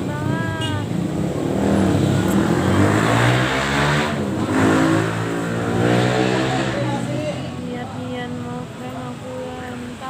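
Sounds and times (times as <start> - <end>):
vehicle engine revving: 0.8 - 7.6.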